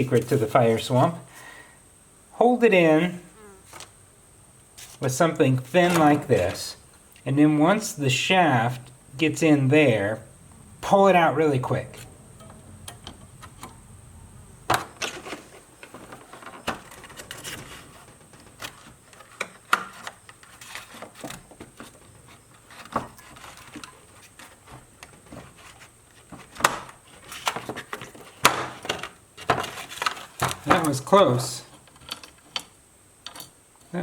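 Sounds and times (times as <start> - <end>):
small metal parts clicking: 31.8 - 33.9.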